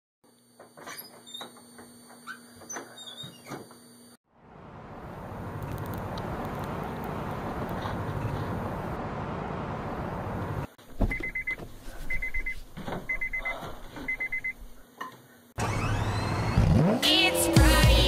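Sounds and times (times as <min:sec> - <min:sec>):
car running rumble: 0:04.4 - 0:10.8
short electronic beeps: 0:14.1 - 0:14.6.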